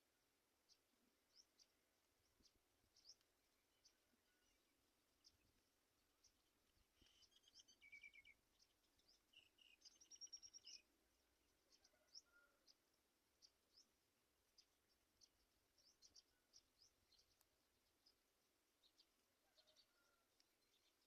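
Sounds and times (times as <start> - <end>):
birds chirping and trilling: 0.7 - 5.6, 6.2 - 10.9, 11.6 - 18.2.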